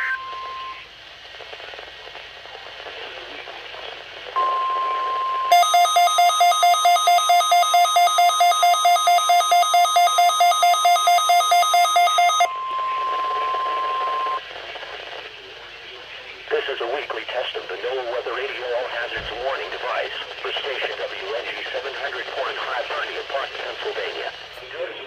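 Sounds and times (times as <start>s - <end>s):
steady piercing warning tone: 0.0s - 0.8s, 4.4s - 14.4s
faint radio hiss: 0.0s - 25.0s
rapid alarm beeps: 4.4s - 14.4s.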